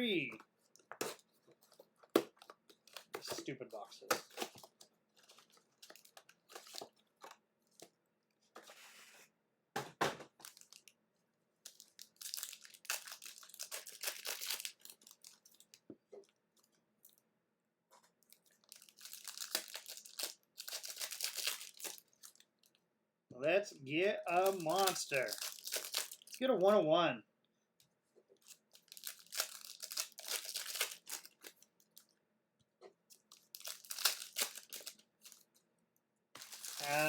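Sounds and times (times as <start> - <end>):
packaging being torn open: 11.7 - 15.7, 18.6 - 22.4, 24.4 - 26.4, 28.8 - 31.6, 33.2 - 35.4, 36.4 - 37.0.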